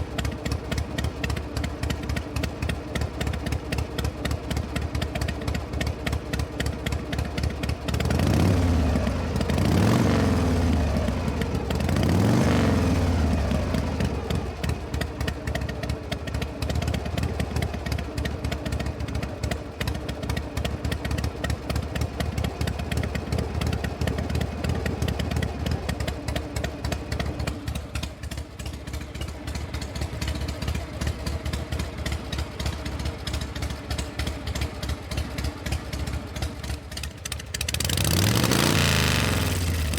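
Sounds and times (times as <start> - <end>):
engine revving and idling: 7.1 - 39.9.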